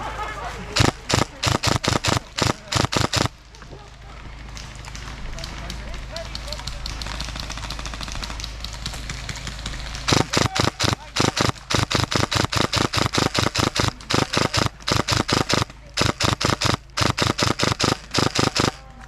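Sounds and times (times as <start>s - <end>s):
airsoft gun firing rapid shots: 0.8s - 3.4s, 6.9s - 18.9s.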